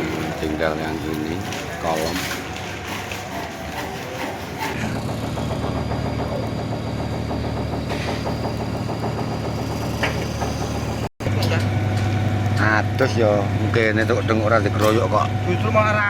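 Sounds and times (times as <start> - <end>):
heavy diesel engine running: 4.8 - 16.0.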